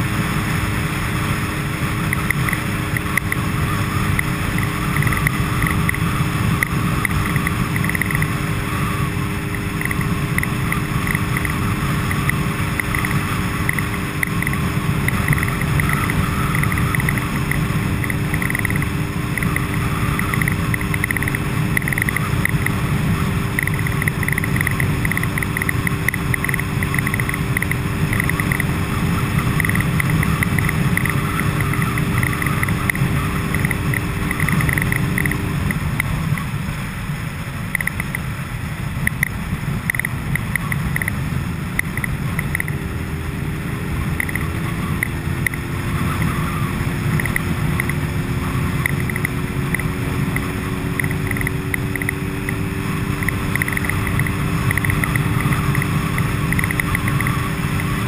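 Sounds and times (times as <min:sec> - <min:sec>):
vehicle low rumble and hum: 0:00.0 - 0:58.0.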